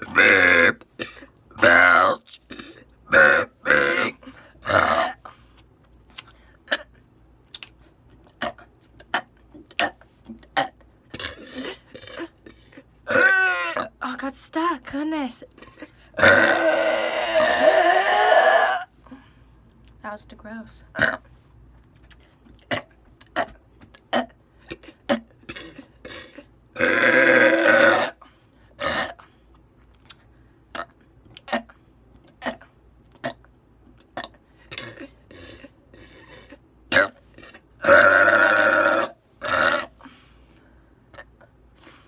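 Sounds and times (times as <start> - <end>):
woman belching: 0.0 - 5.2, 13.1 - 14.0, 16.2 - 18.9, 25.1 - 28.2, 37.8 - 39.9.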